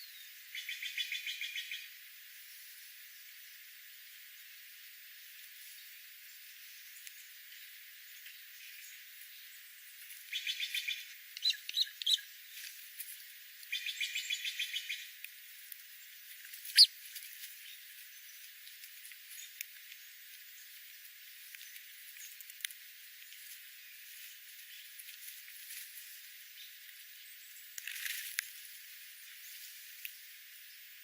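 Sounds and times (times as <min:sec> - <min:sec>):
songbirds chattering trills: 0:05.7 - 0:12.6, 0:13.6 - 0:28.1
faint bird ticks: 0:06.8 - 0:07.6, 0:10.0 - 0:23.6
bird sharp chips: 0:16.6 - 0:16.9.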